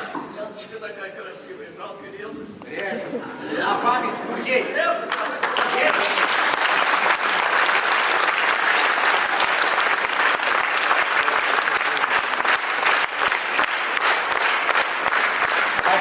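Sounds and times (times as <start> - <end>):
audience applauding: 5.1 - 16.0.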